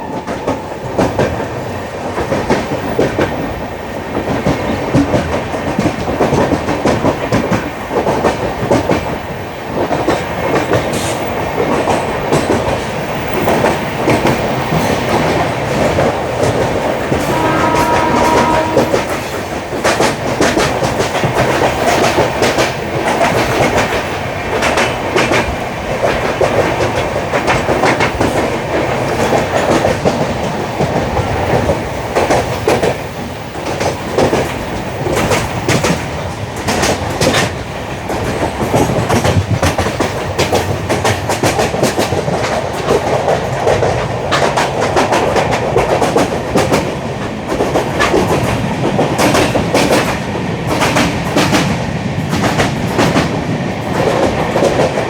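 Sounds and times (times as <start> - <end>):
train wheels rumbling on rails: 0.0 - 55.0
brief high tone: 17.3 - 19.1
wheels clicking over rail joints: 33.6 - 55.0.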